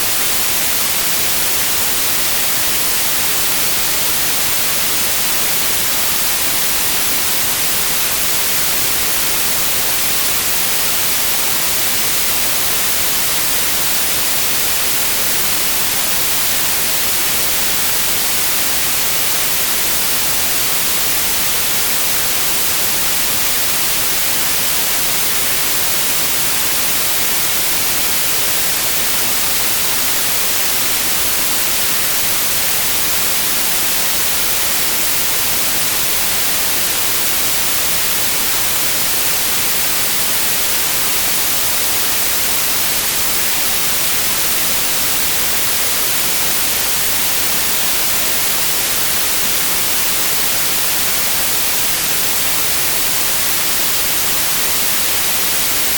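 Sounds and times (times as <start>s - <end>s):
white noise hiss: 0.0s - 55.9s.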